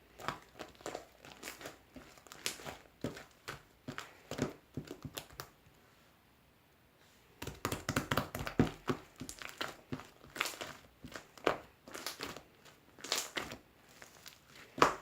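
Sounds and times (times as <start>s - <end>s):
slime crackling and popping: 0.1s - 5.6s, 7.4s - 15.0s.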